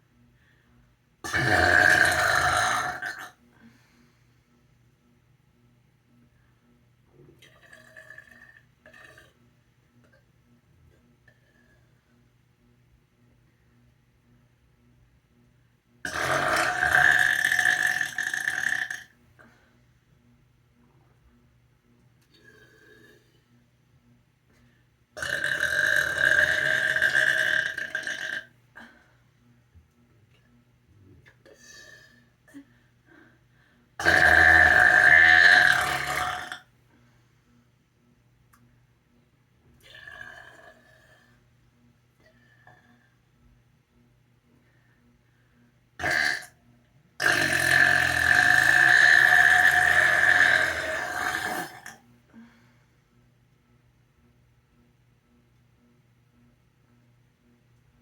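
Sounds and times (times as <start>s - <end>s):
person burping: 1.2s - 3.4s, 7.4s - 9.3s, 16.1s - 19.1s, 25.2s - 29.0s, 34.0s - 36.7s, 46.0s - 46.5s, 47.2s - 52.0s.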